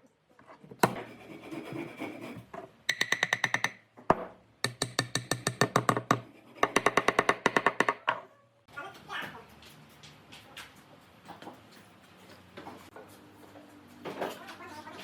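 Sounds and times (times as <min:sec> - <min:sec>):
tool scraping wood: 0:00.5 - 0:03.8, 0:04.7 - 0:08.0.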